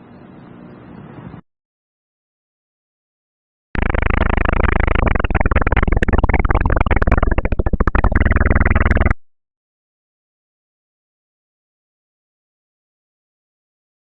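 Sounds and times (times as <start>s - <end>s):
harsh distorted electronic noise: 3.8s - 9.2s.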